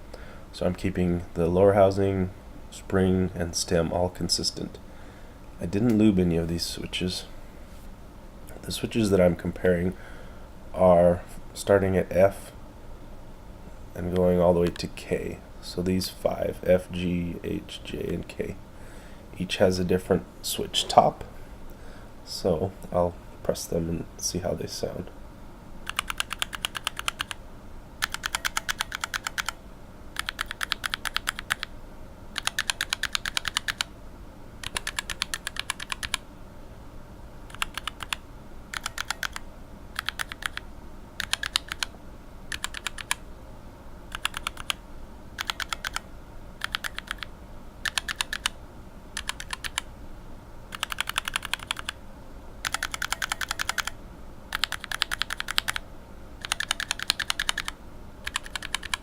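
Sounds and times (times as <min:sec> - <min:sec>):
mechanical keyboard typing: 0:25.9 - 0:27.4, 0:28.0 - 0:29.6, 0:30.2 - 0:31.7, 0:32.4 - 0:33.9, 0:34.6 - 0:36.2, 0:37.5 - 0:39.4, 0:40.0 - 0:40.6, 0:41.2 - 0:41.9, 0:42.5 - 0:43.2, 0:44.1 - 0:44.8, 0:45.4 - 0:46.0, 0:46.6 - 0:48.6, 0:49.2 - 0:49.9, 0:50.7 - 0:52.0, 0:52.6 - 0:55.8, 0:56.4 - 0:59.0.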